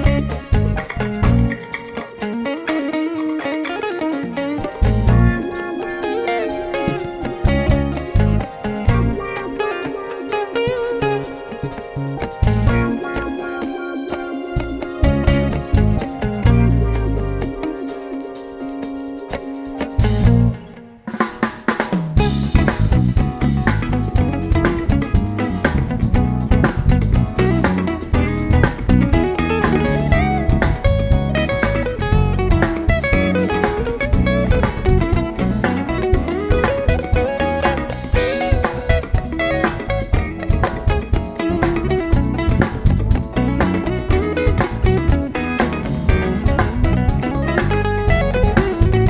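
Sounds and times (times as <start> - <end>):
live band playing instrumental: 0.0 - 49.0.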